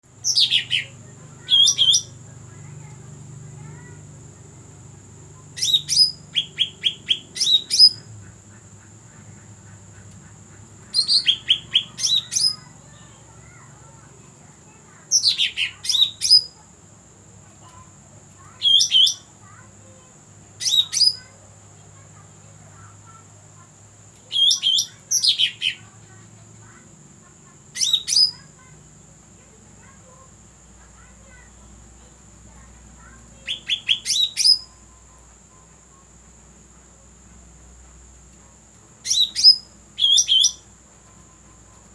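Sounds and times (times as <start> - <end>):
bird calling high notes: 0.2 - 4.6, 5.4 - 8.0.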